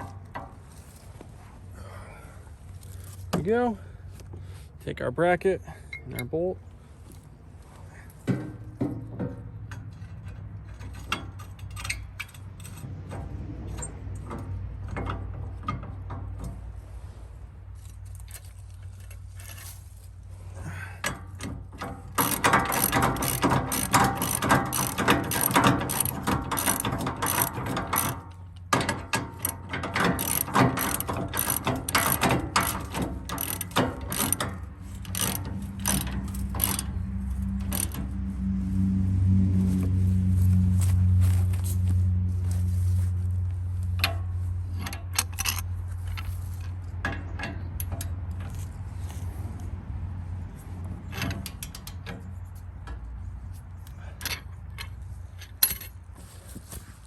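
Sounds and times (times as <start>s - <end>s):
ratchet wrench clicking: 21.0s - 38.3s, 44.0s - 49.3s, 51.1s - 53.0s.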